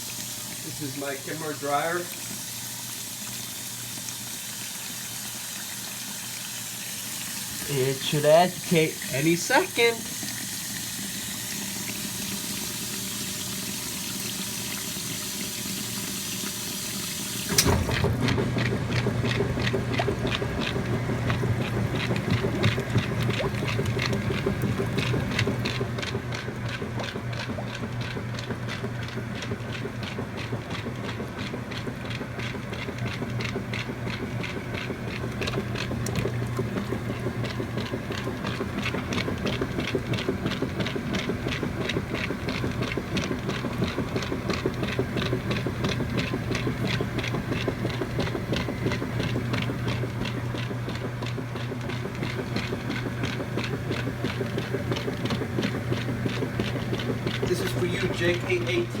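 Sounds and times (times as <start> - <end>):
washing machine humming: 0.0 - 59.0
fast rhythmic ticking: 18.6 - 59.0.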